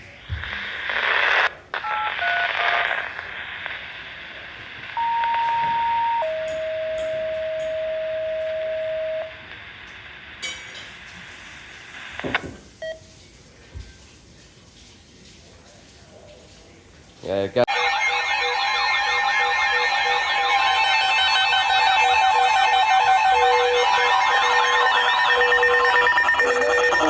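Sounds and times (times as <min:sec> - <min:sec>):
radio hiss: 0:00.0 - 0:06.2, 0:11.2 - 0:13.0, 0:17.6 - 0:27.0
weather radio alert tones: 0:04.8 - 0:09.4, 0:17.7 - 0:27.0.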